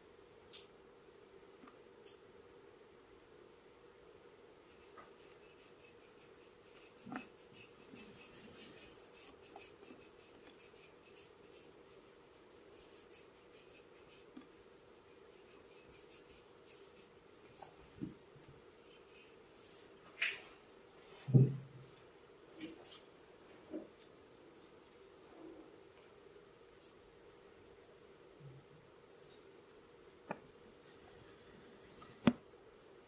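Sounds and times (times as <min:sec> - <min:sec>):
massage strokes rubbing skin: 0:04.6 - 0:14.6, 0:15.3 - 0:17.9
soft knocks: 0:21.3 - 0:21.7.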